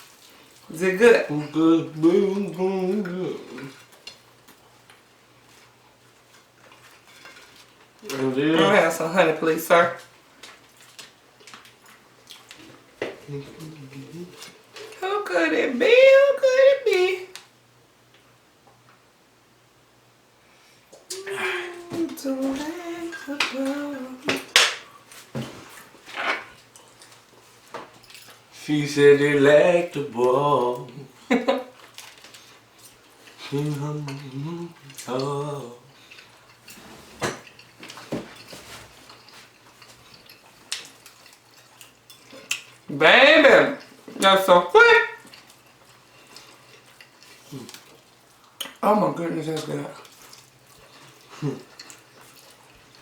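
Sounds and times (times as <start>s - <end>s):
person speaking: 8.0s - 10.0s, 13.2s - 17.3s, 21.1s - 24.5s, 33.4s - 35.9s, 42.9s - 45.3s
cutlery clinking against plates: 36.1s - 42.8s.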